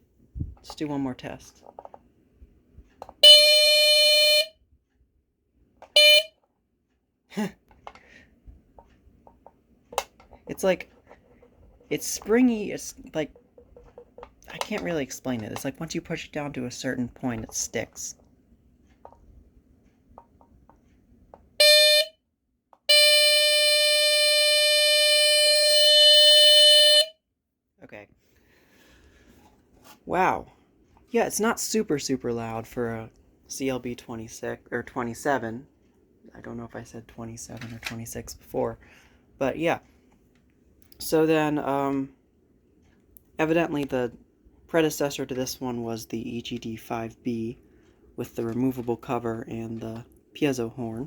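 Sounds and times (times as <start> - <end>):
smoke detector horn squealing: 3.2 - 4.5, 6.0 - 6.3, 21.6 - 22.1, 22.9 - 27.1.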